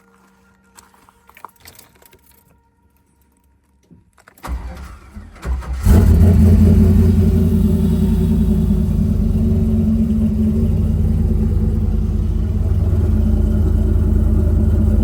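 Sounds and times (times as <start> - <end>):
car starter cranking: 4.4 - 15.0
car engine running: 5.4 - 15.0.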